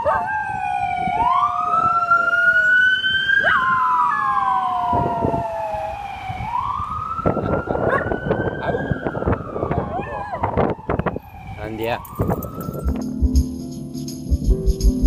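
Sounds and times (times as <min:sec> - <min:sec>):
dog howling: 0:00.0 - 0:00.6, 0:07.7 - 0:08.8, 0:09.5 - 0:11.0
siren wailing: 0:00.0 - 0:13.0.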